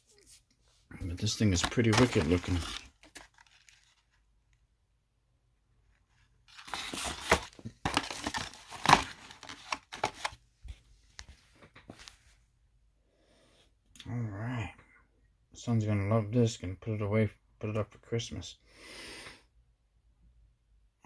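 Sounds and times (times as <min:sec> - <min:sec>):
packaging rustling and crinkling: 0:01.3 - 0:04.2, 0:06.5 - 0:10.4.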